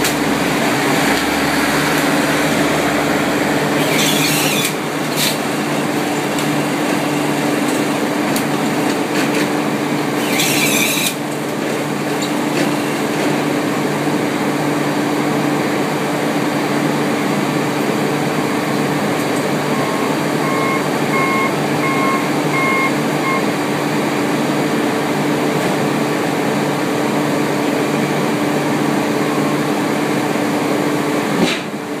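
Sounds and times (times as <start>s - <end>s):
vehicle engine humming: 0.0s - 10.2s, 16.6s - 25.8s
short beeps: 19.7s - 23.5s.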